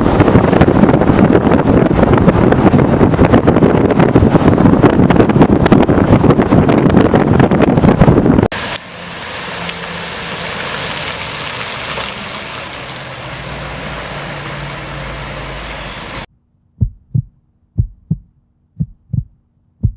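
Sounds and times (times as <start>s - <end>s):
road noise hum: 0.0s - 19.9s
deep thumps like a heartbeat: 16.8s - 19.9s.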